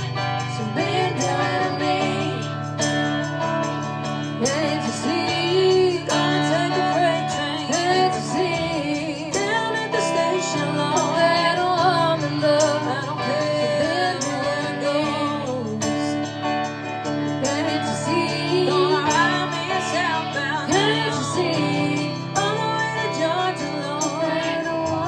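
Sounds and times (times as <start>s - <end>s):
rock band instrumental: 0.0s - 13.4s, 14.2s - 25.0s.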